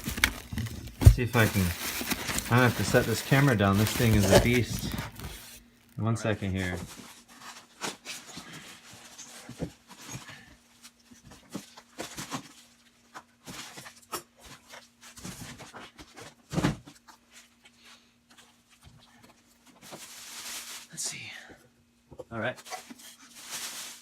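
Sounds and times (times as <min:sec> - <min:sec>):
handling knocks clicks and rustles: 0:00.0 - 0:05.5.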